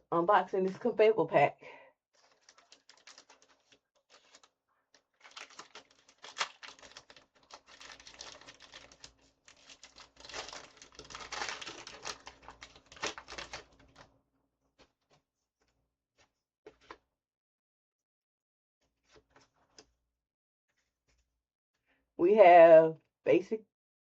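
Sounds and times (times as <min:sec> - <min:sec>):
card pack wrapper crinkling: 0:02.2 - 0:14.0.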